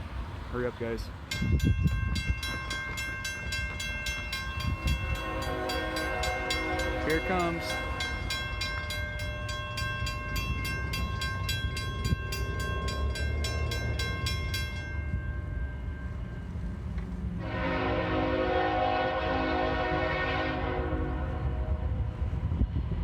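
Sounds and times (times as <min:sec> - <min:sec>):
train rumbling: 0:00.0 - 0:23.0
rapid bell ringing: 0:01.3 - 0:16.6
locomotive horn blast: 0:04.8 - 0:08.5, 0:17.4 - 0:22.3.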